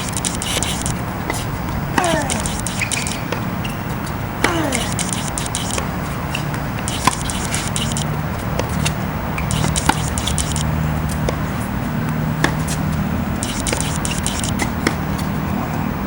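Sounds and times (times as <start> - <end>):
camera autofocus ticking: 0.0 - 1.4, 2.2 - 3.2, 4.7 - 8.2, 8.8 - 10.8, 13.4 - 14.7
steady low hum: 0.0 - 16.0
tennis balls struck by rackets: 0.0 - 16.0.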